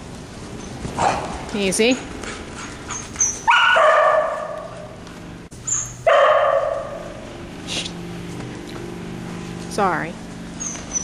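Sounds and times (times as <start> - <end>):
dog barking: 3.4 - 4.8, 6.0 - 7.2.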